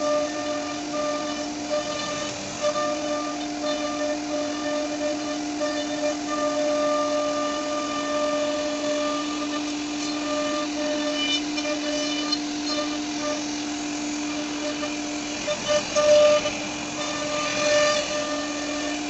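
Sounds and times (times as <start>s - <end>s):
router spindle carving wood: 0.0s - 19.0s.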